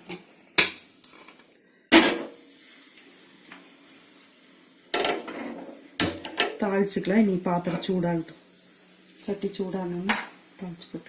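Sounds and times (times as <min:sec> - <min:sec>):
stove hissing: 0:00.0 - 0:11.0
metal pan clanking on stove: 0:04.9 - 0:06.6.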